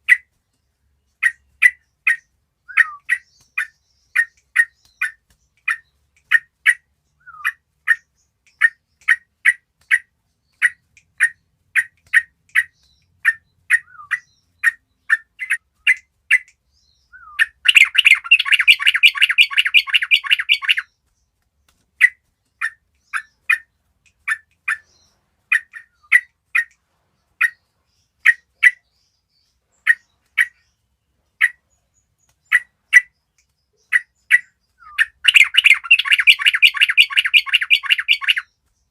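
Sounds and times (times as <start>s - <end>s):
birds chirping: 0.0s - 38.9s.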